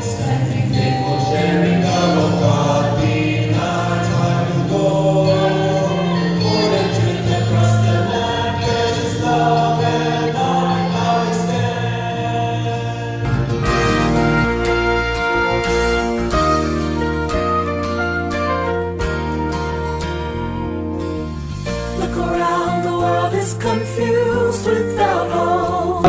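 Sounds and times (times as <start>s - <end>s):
choir singing gospel music: 0.0s - 15.8s.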